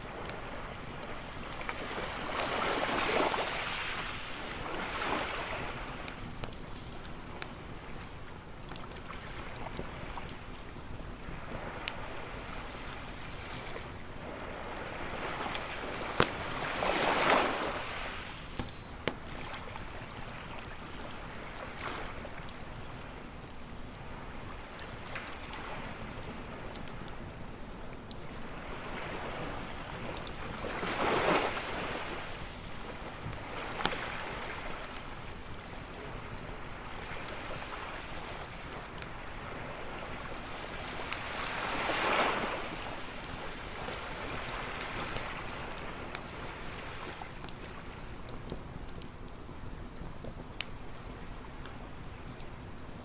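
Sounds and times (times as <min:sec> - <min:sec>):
ocean surf: 0:00.0 - 0:06.2, 0:11.3 - 0:20.5, 0:24.1 - 0:26.6, 0:28.5 - 0:35.0, 0:39.4 - 0:47.3
waves breaking: 0:00.0 - 0:08.1, 0:11.2 - 0:23.1, 0:24.0 - 0:27.2, 0:28.2 - 0:48.1
campfire crackling and popping: 0:00.0 - 0:53.0.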